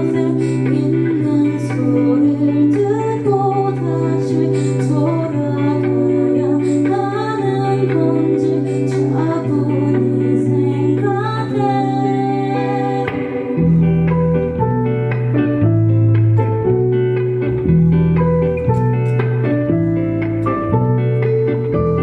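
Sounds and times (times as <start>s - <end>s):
person singing: 0.0s - 14.7s
rock band playing live: 0.0s - 22.0s.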